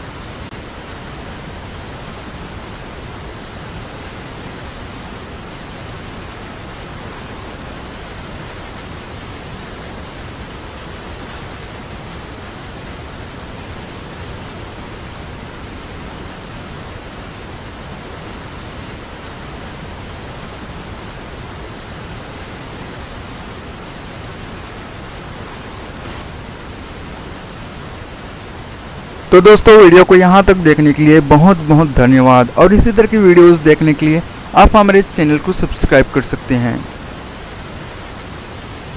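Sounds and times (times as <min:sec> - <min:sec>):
waterfall rushing: 0:25.2 - 0:38.9.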